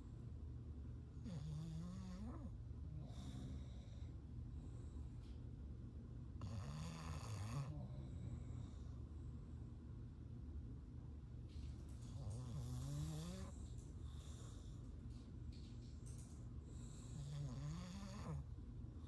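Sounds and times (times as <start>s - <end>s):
dog snoring: 1.2s - 4.2s, 6.4s - 9.0s, 12.0s - 14.8s, 16.7s - 18.6s.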